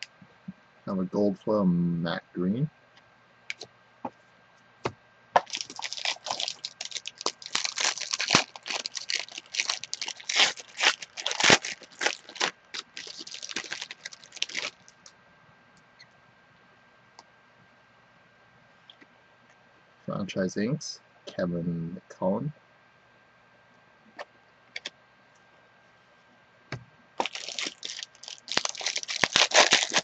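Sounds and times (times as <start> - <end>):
plastic packaging crackling: 5.4 - 15.1, 27.2 - 30.0.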